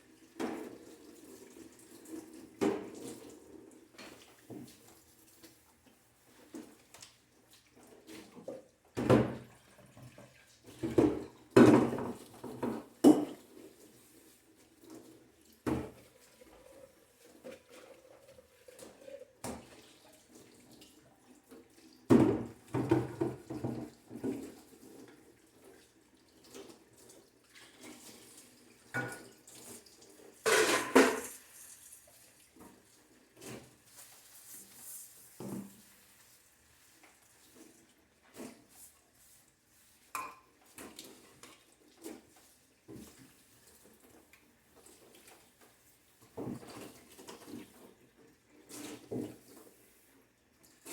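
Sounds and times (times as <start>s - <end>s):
tap water running: 0.0s - 50.9s
dishes clattering: 30.4s - 31.4s.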